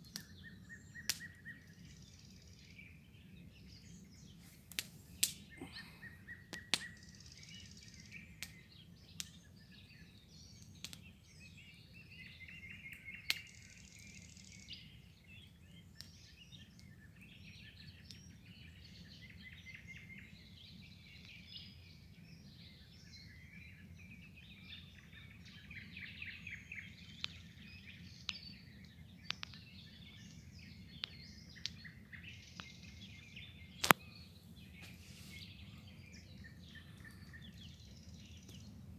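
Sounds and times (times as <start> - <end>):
songbirds singing and chirping: 0.0 - 38.9
sharp clicks: 33.8 - 34.0.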